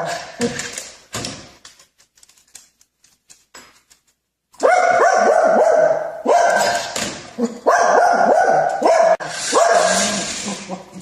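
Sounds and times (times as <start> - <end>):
dog barking: 4.6 - 10.1.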